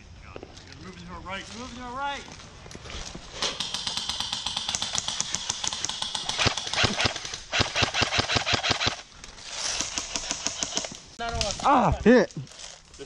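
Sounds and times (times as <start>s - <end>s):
airsoft guns firing in bursts: 3.5s - 9.1s, 9.7s - 11.0s.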